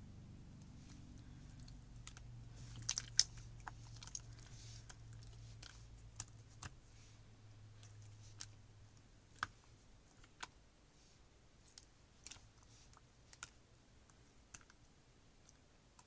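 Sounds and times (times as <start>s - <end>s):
faint steady low hum: 0.0s - 16.0s
slime squished by hand: 0.8s - 6.8s.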